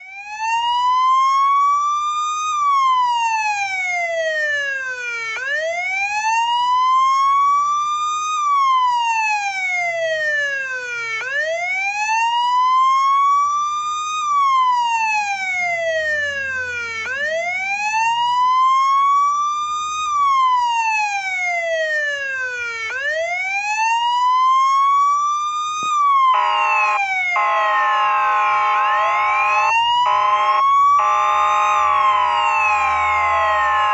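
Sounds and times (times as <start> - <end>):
police siren wailing: 0.0 - 33.9
pulsing horn-like tone: 26.3 - 33.9.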